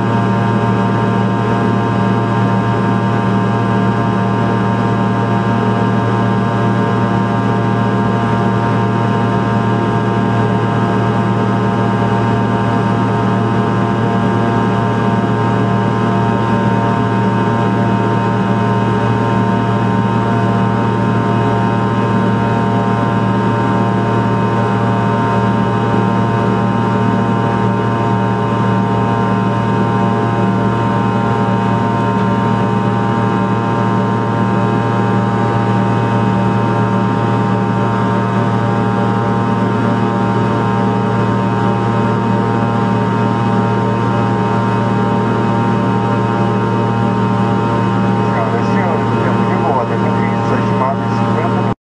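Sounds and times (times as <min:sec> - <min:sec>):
jet engines droning: 0:43.8 - 0:51.8.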